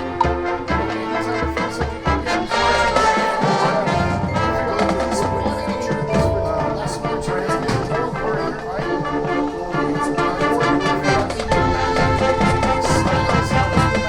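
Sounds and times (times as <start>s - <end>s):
marching band playing: 0.0s - 14.0s
marimba and xylophone: 0.0s - 14.0s.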